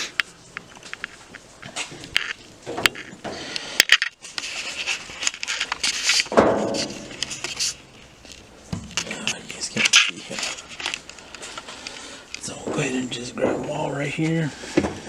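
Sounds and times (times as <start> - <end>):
handling clicks and rustles: 0.0 - 15.0
loud thump: 6.3 - 7.5.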